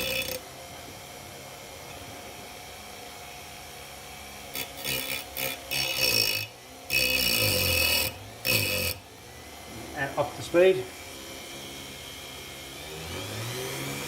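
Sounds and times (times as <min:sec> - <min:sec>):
grinding disc cutting metal: 0:00.0 - 0:00.6, 0:04.0 - 0:14.0
rotary tool motor humming: 0:00.0 - 0:14.0.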